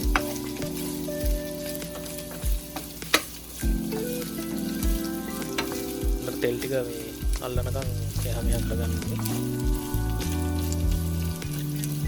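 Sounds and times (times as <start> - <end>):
chicken sizzling in hot oil: 0.0 - 12.0.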